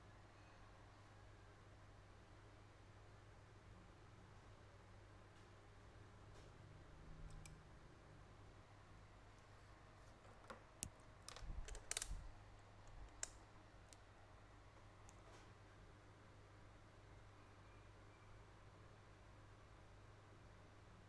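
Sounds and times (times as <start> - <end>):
faint low hum: 0.0 - 21.0
small sharp clicks and taps: 10.1 - 12.2, 12.9 - 14.1.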